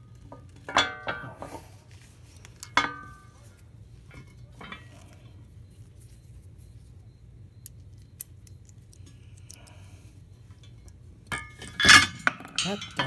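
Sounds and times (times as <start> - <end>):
metallic clicks of fasteners: 7.6 - 9.8.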